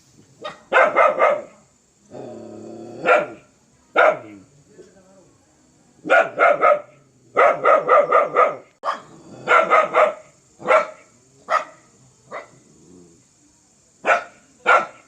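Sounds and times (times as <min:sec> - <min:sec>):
dog barking fiercely: 0:00.4 - 0:01.6, 0:03.0 - 0:04.4, 0:06.0 - 0:12.6, 0:14.0 - 0:15.0.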